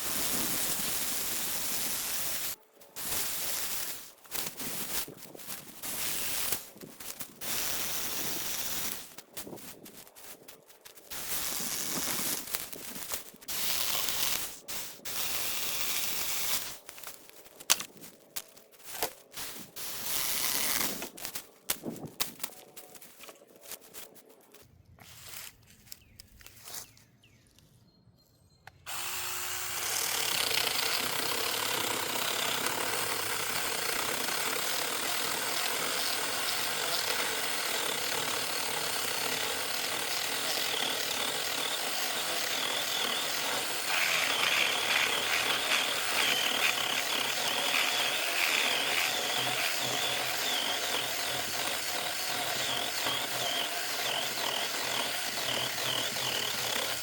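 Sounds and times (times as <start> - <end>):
mini chainsaw cutting wood: 0.0 - 16.9, 18.9 - 21.5, 28.9 - 57.0.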